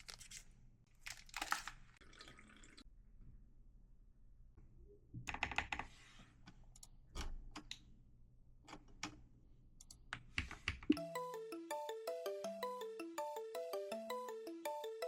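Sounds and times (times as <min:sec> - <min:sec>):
melodic music track: 0:11.0 - 0:15.0.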